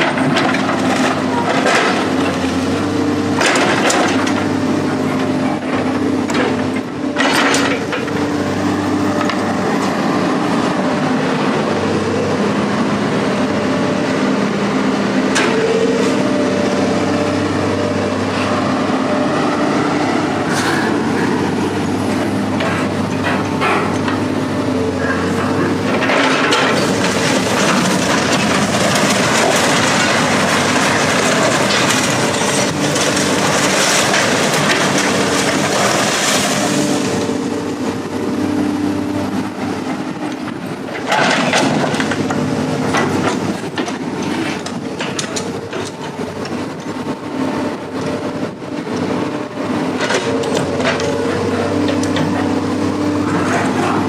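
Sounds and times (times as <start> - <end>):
loud rattling and clanking: 0.0 - 2.6, 20.4 - 38.1, 39.3 - 46.8
heavy engine running: 0.0 - 54.0.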